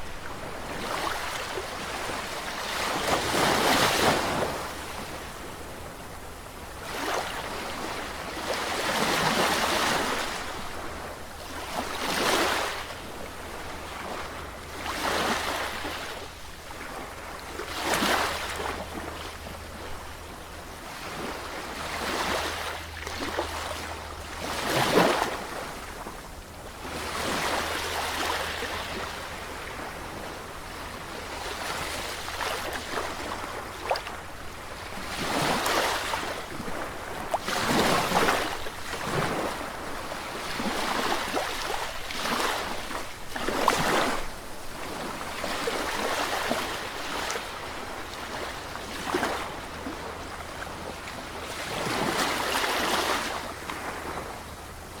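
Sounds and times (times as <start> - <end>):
sea waves breaking: 26.9 - 50.2.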